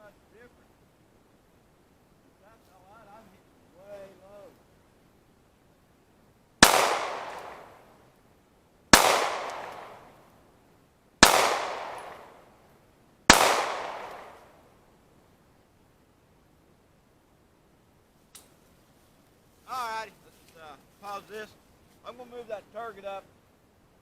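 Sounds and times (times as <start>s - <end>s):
handgun shots echoing: 6.6s - 7.8s, 9.0s - 10.1s, 11.2s - 12.4s, 13.3s - 14.5s.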